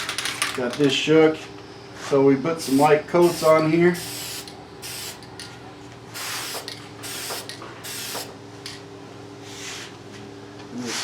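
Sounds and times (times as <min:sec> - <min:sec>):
aerosol spray can hissing: 0:02.6 - 0:05.2, 0:06.2 - 0:08.3.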